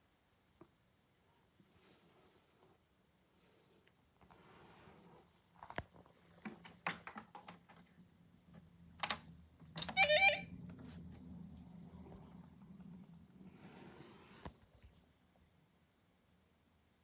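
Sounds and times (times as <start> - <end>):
low steady hum: 7.7 - 17.0.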